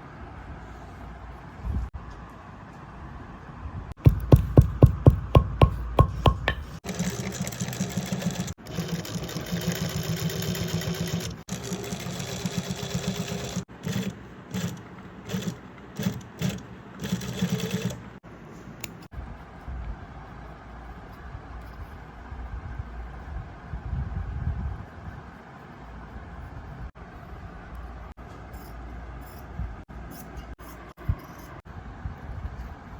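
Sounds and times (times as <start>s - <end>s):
sharp hammer strikes: 4.0s - 6.8s.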